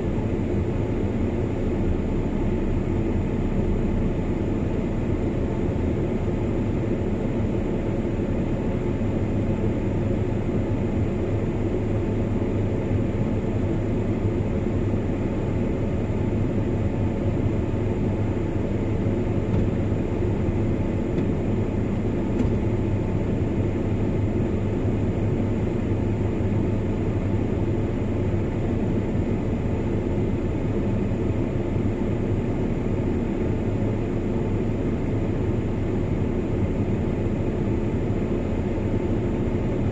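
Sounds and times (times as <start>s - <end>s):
road noise: 0.0s - 39.9s
truck engine drone: 0.0s - 39.9s.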